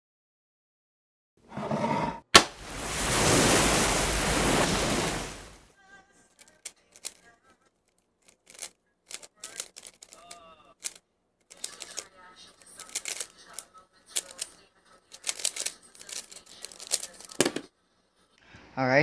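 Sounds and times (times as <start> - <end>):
speed cube clicking: 8.2 - 17.4.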